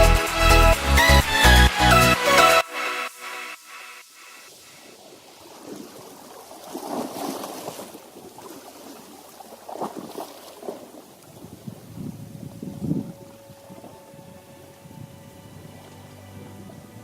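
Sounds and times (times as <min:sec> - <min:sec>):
music track: 0:00.0 - 0:04.5, 0:13.0 - 0:17.0
sea water lapping and splashing: 0:04.9 - 0:17.0.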